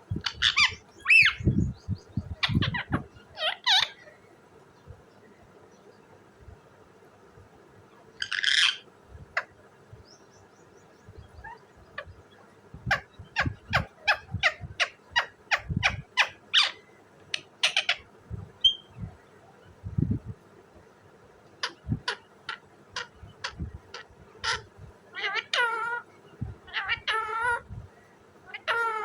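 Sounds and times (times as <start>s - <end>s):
parakeet screeching: 0.2s - 1.4s, 2.4s - 4.0s, 8.2s - 8.8s, 12.9s - 18.0s, 21.6s - 26.0s, 26.7s - 27.6s, 28.5s - 29.0s.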